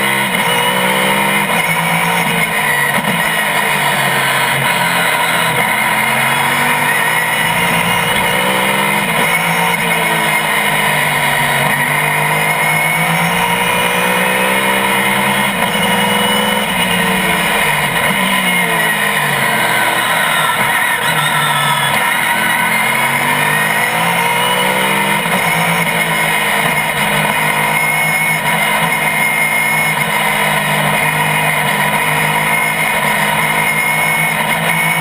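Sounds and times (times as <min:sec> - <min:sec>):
race car engine revving: 0:00.0 - 0:35.0.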